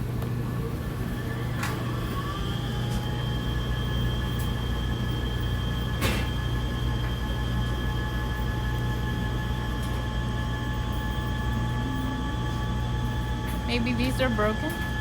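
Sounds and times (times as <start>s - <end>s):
washers and dryers humming: 0.0s - 15.0s
faint high whine: 10.5s - 14.5s.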